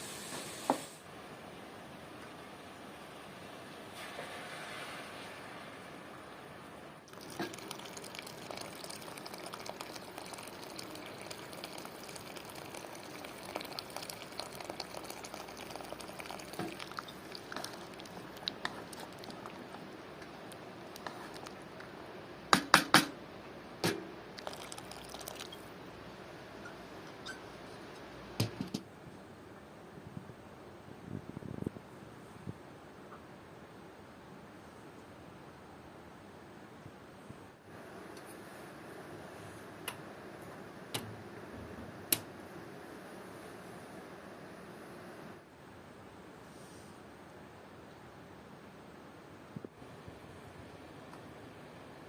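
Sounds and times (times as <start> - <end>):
stew bubbling: 7.1 - 21.9, 24.3 - 25.7.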